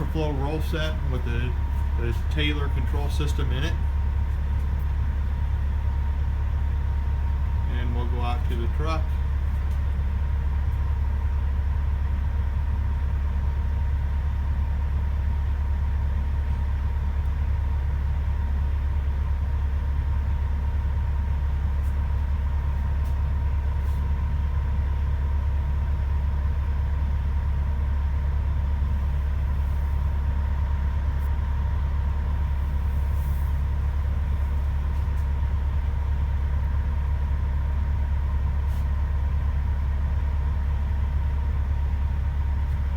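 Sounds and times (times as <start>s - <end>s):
truck engine idling: 0.0s - 42.9s.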